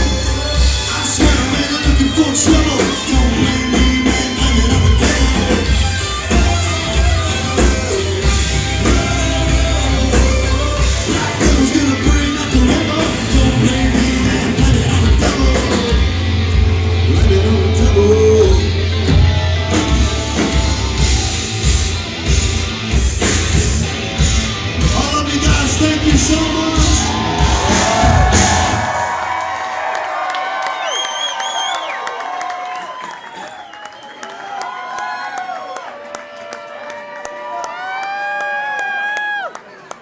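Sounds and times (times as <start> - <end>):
rock band playing: 0.0 - 30.2.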